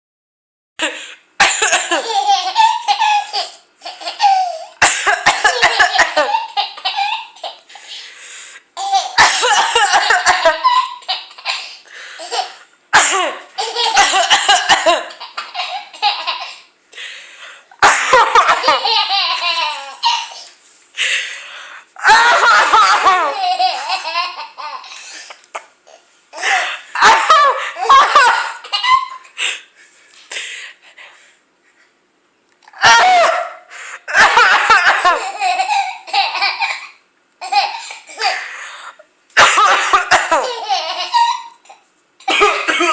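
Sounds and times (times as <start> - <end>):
woman coughing: 0.8 - 2.1, 4.8 - 6.3, 9.2 - 10.6, 13.0 - 15.1, 17.8 - 18.8, 22.0 - 23.4, 26.5 - 28.6, 32.8 - 35.2, 39.4 - 40.6, 42.3 - 42.9
baby laughing: 1.7 - 4.8, 5.4 - 7.8, 8.8 - 12.6, 13.2 - 16.7, 18.1 - 20.6, 22.0 - 25.7, 26.4 - 29.4, 34.1 - 36.8, 39.6 - 42.9.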